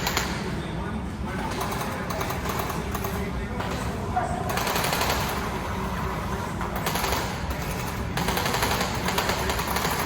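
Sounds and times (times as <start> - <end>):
rapid automatic gunfire: 4.5 - 5.8, 6.8 - 10.0.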